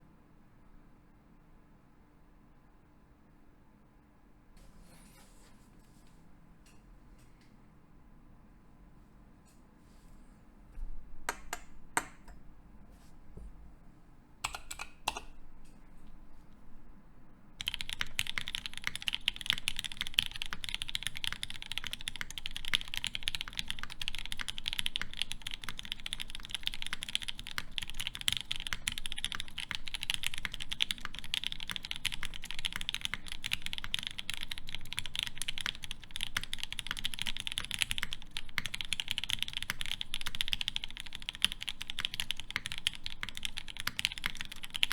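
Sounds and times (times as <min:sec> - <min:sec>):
typing on mechanical keyboard: 0:14.4 - 0:15.2, 0:17.6 - 0:44.9.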